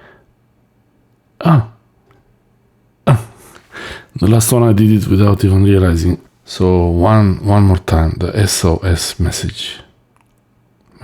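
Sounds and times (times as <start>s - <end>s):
faint breath: 0.0s - 0.3s, 3.4s - 4.1s
man grunting hm: 1.4s - 1.8s, 3.1s - 3.6s.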